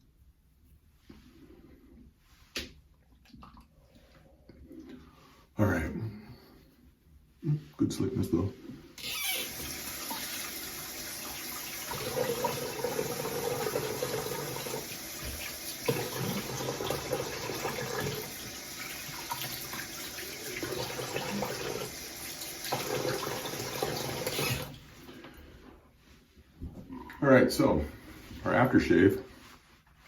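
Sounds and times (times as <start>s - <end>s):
tap water running into sink: 9.4s - 24.8s.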